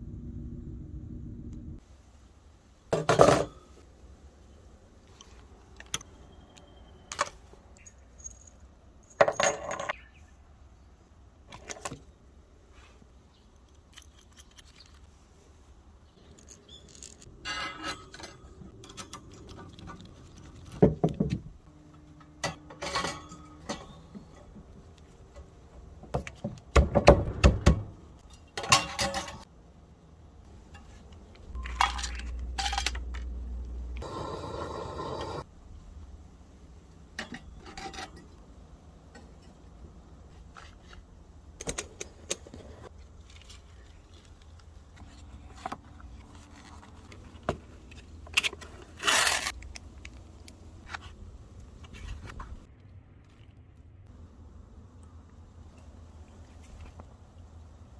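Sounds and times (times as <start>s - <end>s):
steady low rumble: 0.0s - 1.8s
small metal parts clinking: 7.1s - 10.0s, 13.5s - 15.1s, 16.2s - 20.3s, 30.7s - 33.3s.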